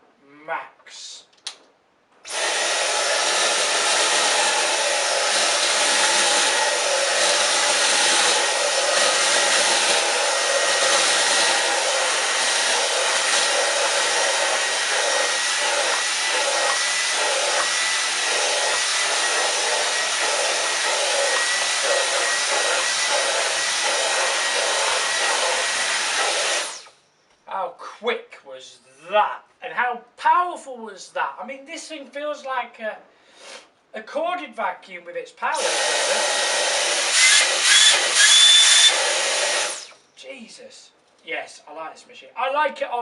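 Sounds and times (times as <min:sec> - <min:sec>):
vacuum cleaner running: 0:02.3 - 0:27.0, 0:35.6 - 0:40.0.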